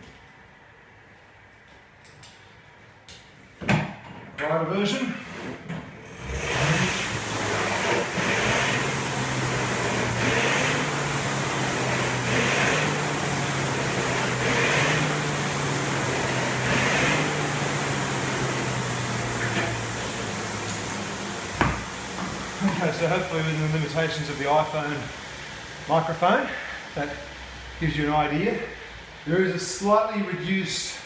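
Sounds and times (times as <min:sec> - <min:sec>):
rowing machine flywheel hum: 0:05.4 - 0:27.8.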